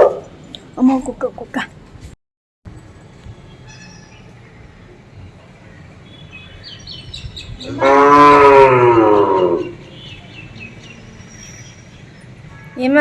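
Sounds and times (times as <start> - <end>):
cow mooing: 7.6 - 9.8.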